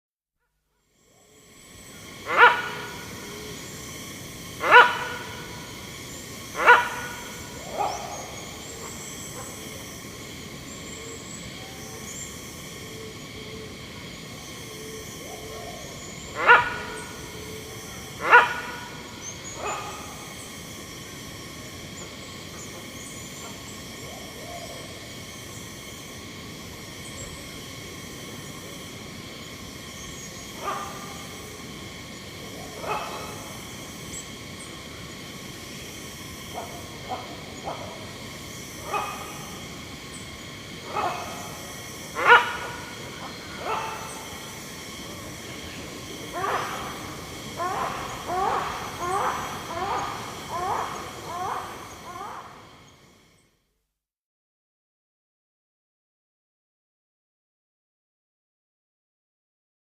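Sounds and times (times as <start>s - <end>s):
hornbill calling: 1.3s - 21.0s, 29.9s - 53.0s.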